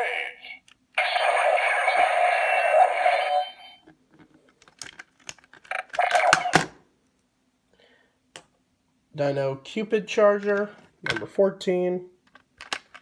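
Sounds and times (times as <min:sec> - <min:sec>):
buzzy electronic toy sound effect: 0:00.0 - 0:03.8, 0:05.7 - 0:06.6
plastic clicks: 0:04.5 - 0:06.8, 0:12.3 - 0:13.0.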